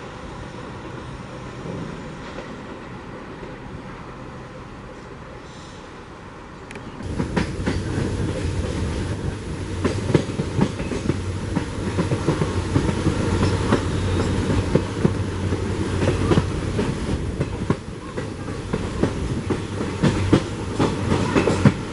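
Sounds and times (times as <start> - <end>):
train wheels clattering over rail joints: 7.0 - 21.9.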